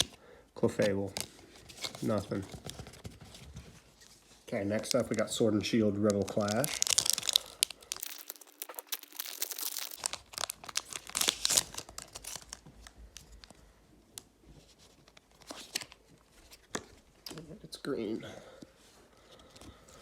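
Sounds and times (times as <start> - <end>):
foil wrapper crinkling and tearing: 5.9 - 13.6.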